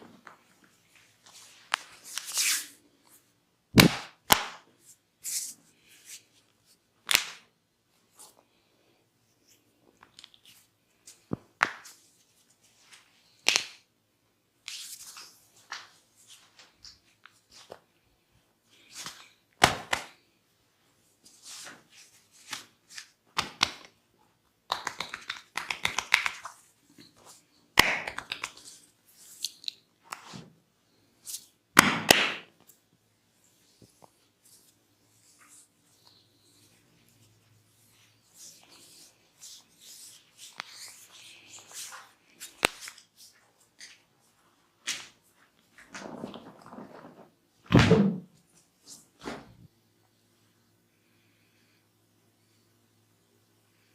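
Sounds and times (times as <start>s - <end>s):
hands slapping head: 3.8s - 4.7s, 7.1s - 7.4s, 11.3s - 11.9s, 19.6s - 20.2s, 23.4s - 23.9s, 24.7s - 26.5s, 27.8s - 28.7s, 31.8s - 32.5s.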